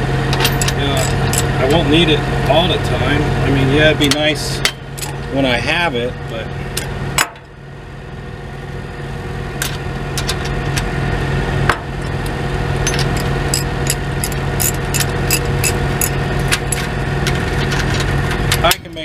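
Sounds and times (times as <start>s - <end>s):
diesel truck engine idling: 0.0s - 19.0s
hand tools tapping metal: 12.8s - 16.9s.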